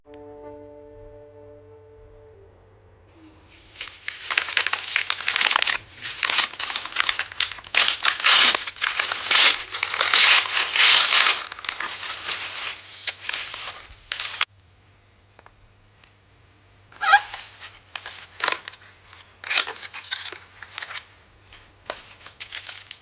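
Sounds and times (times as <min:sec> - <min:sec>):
packaging crinkling and tearing: 0:03.6 - 0:14.5, 0:17.0 - 0:23.0.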